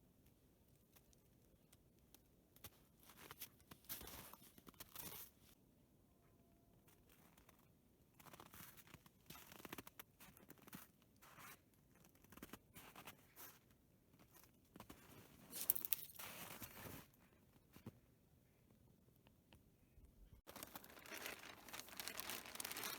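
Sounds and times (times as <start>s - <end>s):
rustling and scraping materials: 14.2s - 18.0s, 20.5s - 22.9s.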